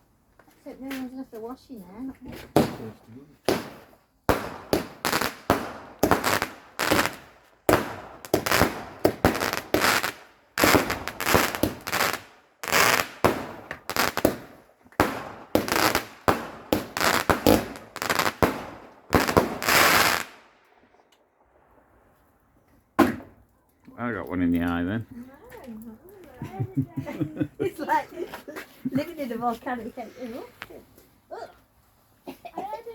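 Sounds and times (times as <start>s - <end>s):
fireworks bangs and crackles: 2.5s - 20.9s.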